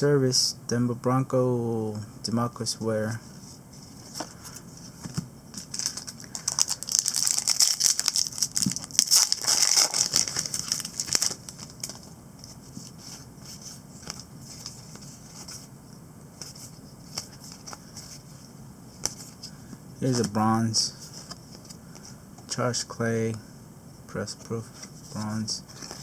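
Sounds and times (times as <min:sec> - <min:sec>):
cards clicking and rustling: 0:05.0 - 0:15.7, 0:16.4 - 0:18.2, 0:24.8 - 0:26.0
wrapper crinkling and tearing: 0:05.6 - 0:12.0.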